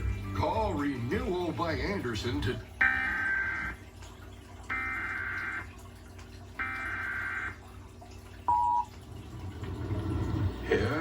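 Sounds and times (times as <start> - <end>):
two-tone attention signal: 2.8 - 3.8, 4.7 - 5.7, 6.6 - 7.6, 8.5 - 8.9.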